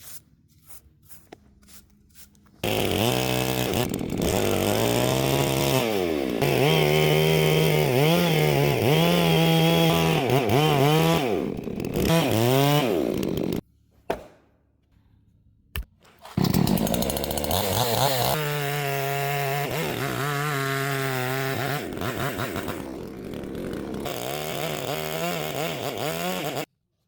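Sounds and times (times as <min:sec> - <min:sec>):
chainsaw cutting wood: 0:02.6 - 0:13.6, 0:16.2 - 0:26.7.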